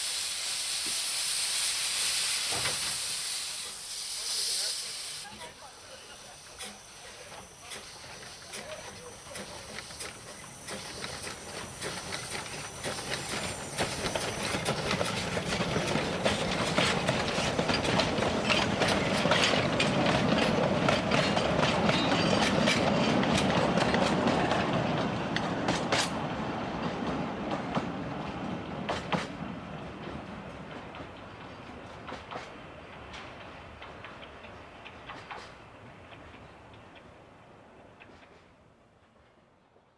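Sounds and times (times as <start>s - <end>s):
model train wheels clicking: 6.4s - 24.2s.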